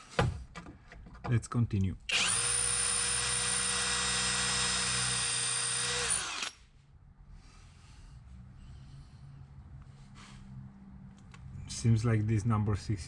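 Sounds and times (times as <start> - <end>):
cordless drill drilling into metal: 2.1 - 6.6.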